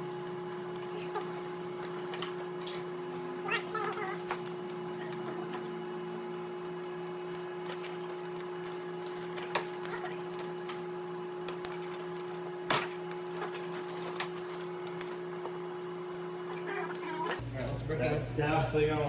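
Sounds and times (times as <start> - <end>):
low machine hum: 0.0 - 19.0.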